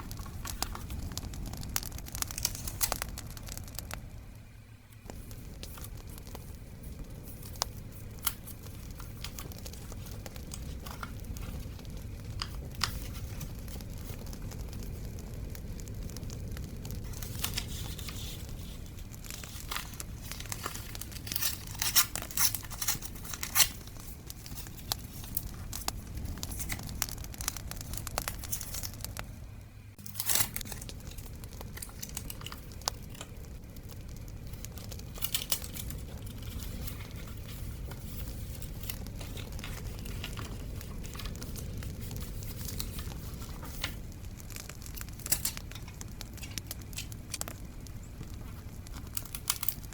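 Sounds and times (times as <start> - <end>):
bonfire crackling: 0.0 - 49.9
paper tearing and crinkling: 17.0 - 29.0, 30.0 - 33.3, 34.6 - 47.6, 48.3 - 49.9.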